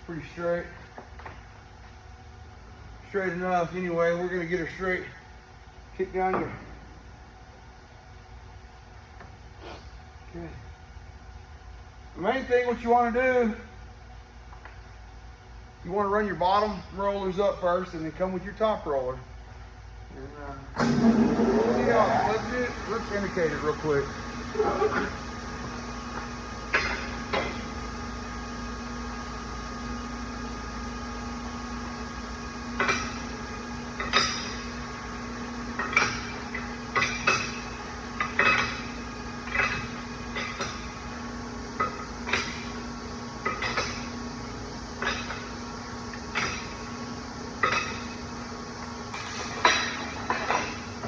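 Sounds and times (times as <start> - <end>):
steady machine hum: 0.0 - 51.0.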